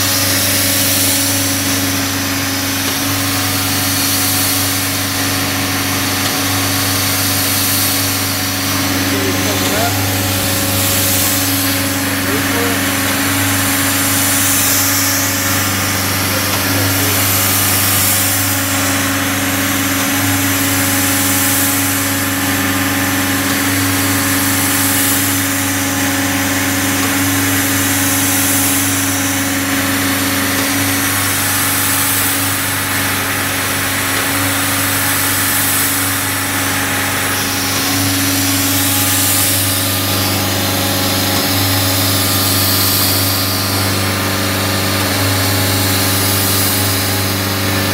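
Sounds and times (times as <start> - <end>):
cart engine running: 0.0 - 25.2.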